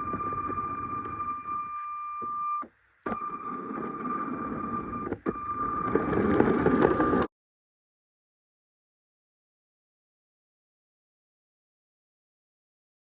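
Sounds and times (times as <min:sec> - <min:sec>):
train rattling on plastic track: 0:05.9 - 0:07.3.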